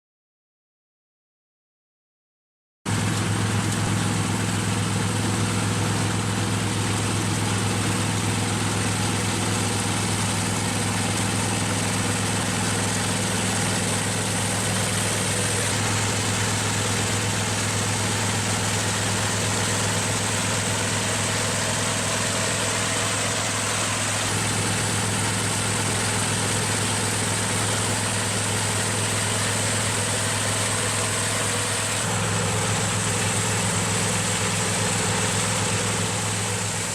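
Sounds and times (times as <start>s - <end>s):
harvester engine drone and whine: 2.9s - 36.9s.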